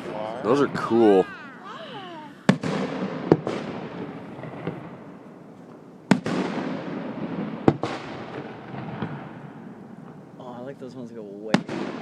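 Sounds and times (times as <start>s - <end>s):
fireworks booming: 0.0s - 5.5s, 6.1s - 10.4s, 11.5s - 12.0s
rolling echo and crackle: 2.4s - 10.4s.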